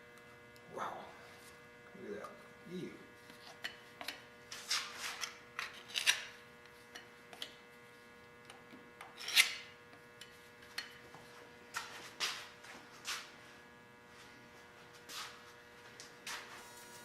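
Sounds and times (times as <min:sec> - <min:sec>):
steady electrical hum: 0:00.0 - 0:17.0
hand tools scraping metal: 0:03.3 - 0:06.3, 0:09.0 - 0:10.9.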